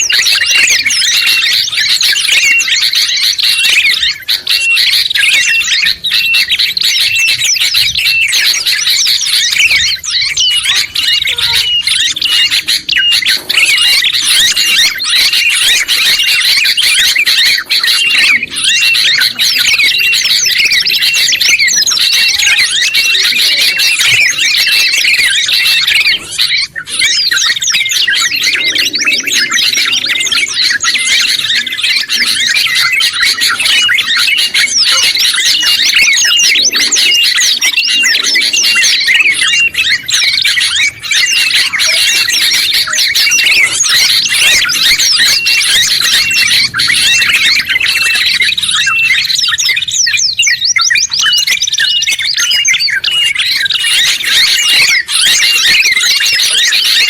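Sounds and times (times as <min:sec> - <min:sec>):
songbirds chirping and trilling: 0:00.0 - 0:57.0.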